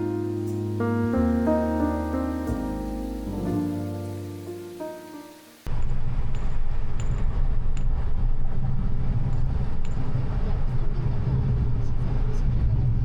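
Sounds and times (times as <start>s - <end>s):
soft piano music: 0.0s - 5.7s
steady low rumble: 5.7s - 13.0s.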